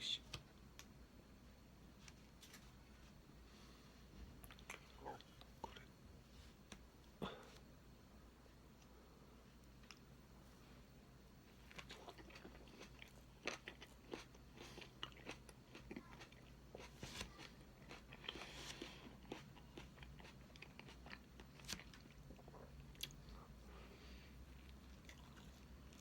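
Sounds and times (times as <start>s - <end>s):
person chewing cake: 4.3s - 6.0s, 11.5s - 26.0s.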